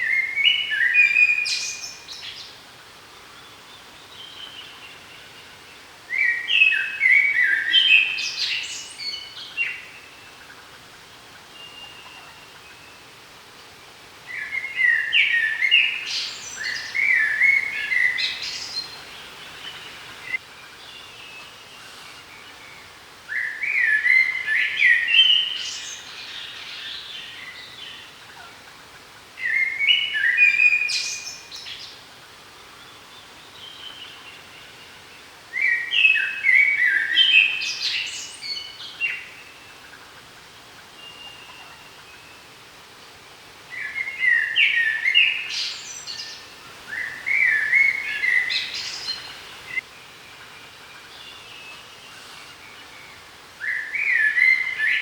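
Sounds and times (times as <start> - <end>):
songbird singing: 0.0 - 55.0.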